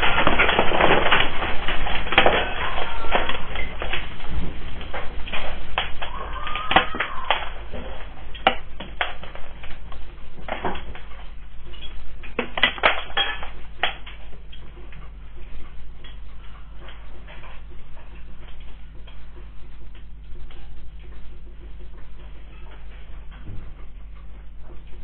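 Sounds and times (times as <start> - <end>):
household objects rattling and knocking: 0.0 - 15.2
steady electrical hum: 0.0 - 25.0.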